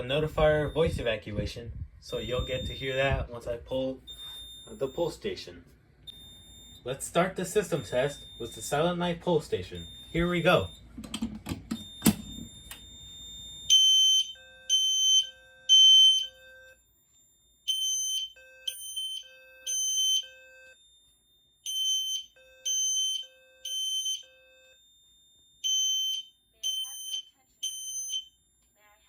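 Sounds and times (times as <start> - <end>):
lower pulsing alarm tone: 0.0 - 1.2, 2.0 - 10.9, 11.8 - 29.0
horn strobe high beeps: 2.1 - 10.9, 25.6 - 29.0.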